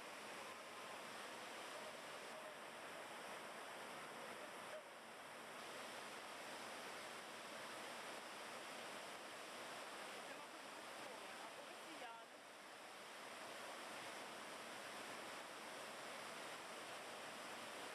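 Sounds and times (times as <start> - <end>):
fast-flowing river water: 0.0 - 17.9.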